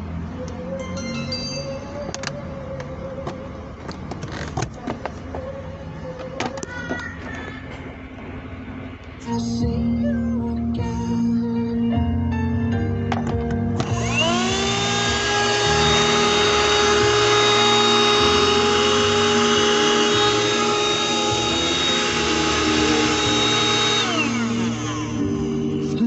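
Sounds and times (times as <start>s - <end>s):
handheld vacuum cleaner whining: 13.8s - 26.0s.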